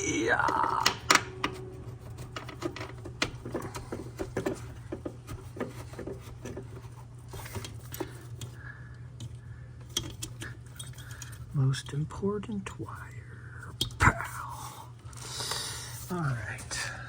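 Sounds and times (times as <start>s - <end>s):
steady low hum: 0.0s - 17.0s
small parts and tools clicking: 9.2s - 12.0s.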